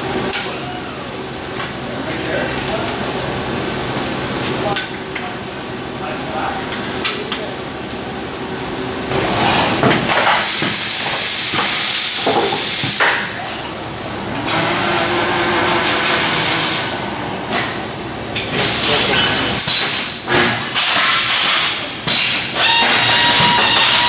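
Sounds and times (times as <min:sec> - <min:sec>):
welding hiss and crackle: 0:10.1 - 0:13.1.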